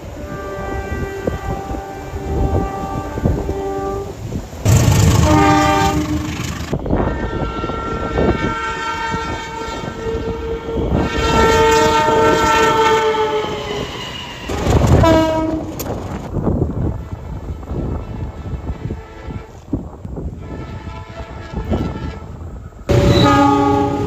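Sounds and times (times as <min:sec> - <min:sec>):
train horn blasts: 0:00.0 - 0:16.0, 0:16.9 - 0:24.0
wheels clattering on rails: 0:04.7 - 0:06.8.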